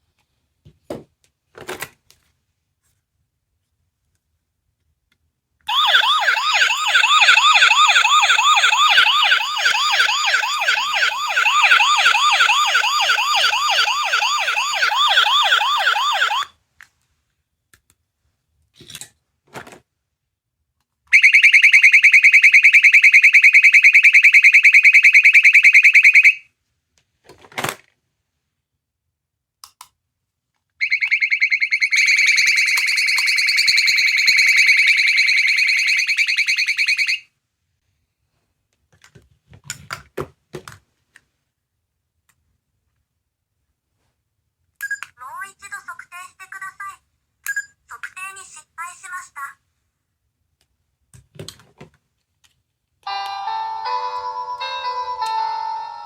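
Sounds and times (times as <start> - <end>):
buzzing alarm tone: 5.7 - 16.5
electronic warbling siren: 5.7 - 16.5, 30.8 - 37.2
toy clicks: 47.4 - 47.8.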